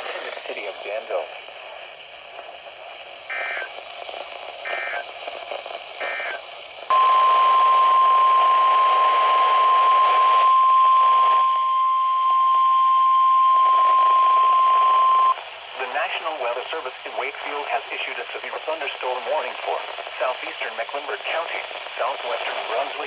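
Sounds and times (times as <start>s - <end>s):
radio hiss: 0.0s - 23.0s
steady warning alarm tone: 6.1s - 15.4s.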